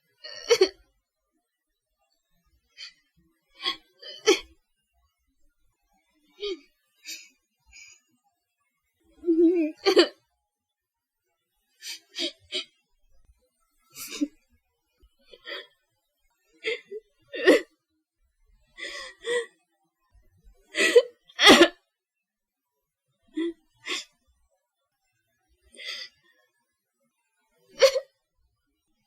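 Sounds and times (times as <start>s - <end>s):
person sobbing softly: 9.2s - 10.1s.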